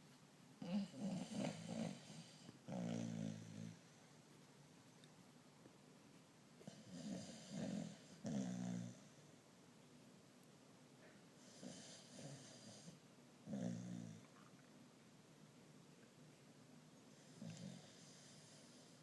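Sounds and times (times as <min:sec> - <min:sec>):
pet snoring: 0:00.6 - 0:04.0, 0:06.6 - 0:09.2, 0:11.4 - 0:14.3, 0:17.1 - 0:19.0.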